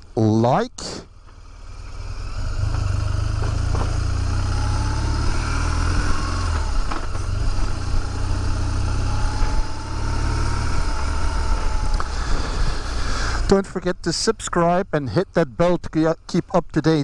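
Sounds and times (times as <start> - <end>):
road and wind noise: 0.0 - 17.0
motorcycle engine running: 1.1 - 13.7.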